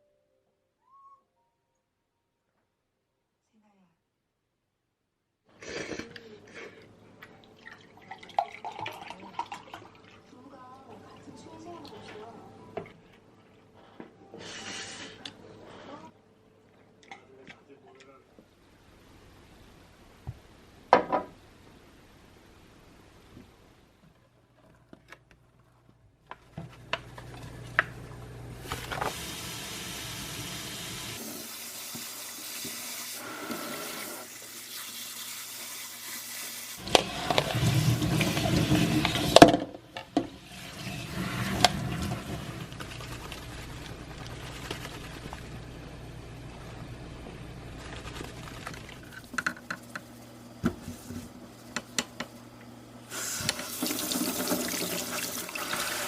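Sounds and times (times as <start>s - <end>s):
water running from a tap: 28.7s - 39.4s, 40.3s - 45.6s, 53.1s - 56.0s.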